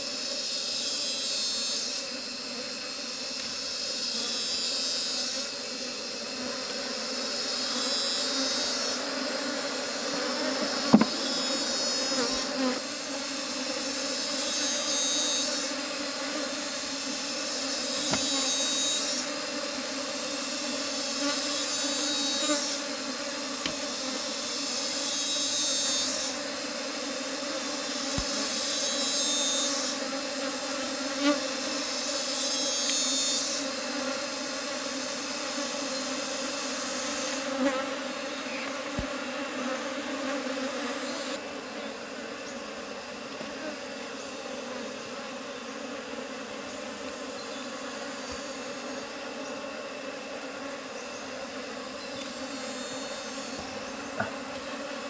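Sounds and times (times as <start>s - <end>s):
high-pitched insect trill: 0.0s - 6.4s, 7.0s - 9.1s, 11.1s - 19.3s, 20.3s - 22.8s, 23.6s - 26.6s, 27.6s - 30.6s, 31.2s - 38.8s, 47.4s - 55.0s
bees buzzing: 0.0s - 55.0s.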